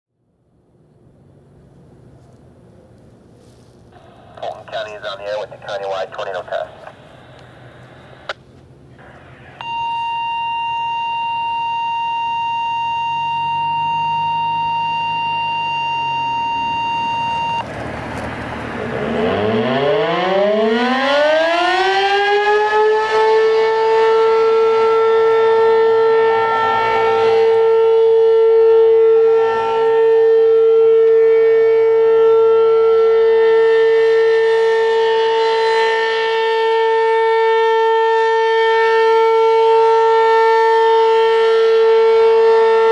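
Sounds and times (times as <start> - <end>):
warning siren winding up: 9.5 - 17.7, 19.2 - 42.9.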